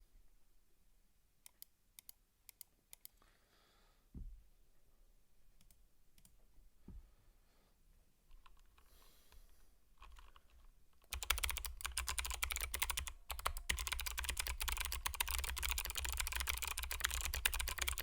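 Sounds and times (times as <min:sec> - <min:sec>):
low thump: 0:04.2 - 0:04.4.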